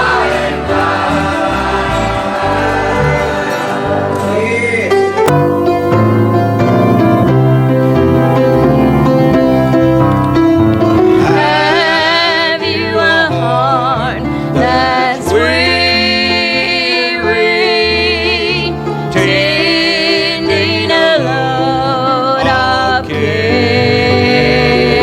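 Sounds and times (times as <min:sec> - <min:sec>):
piano accompaniment: 0:00.0 - 0:25.0
person singing with vibrato: 0:10.9 - 0:25.0.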